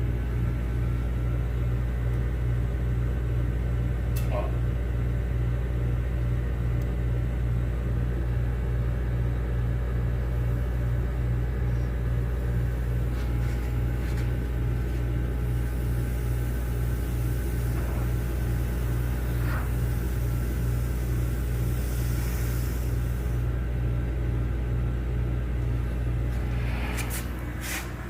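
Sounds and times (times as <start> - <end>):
air compressor humming: 0.0 - 28.0
high air hiss: 15.6 - 23.4.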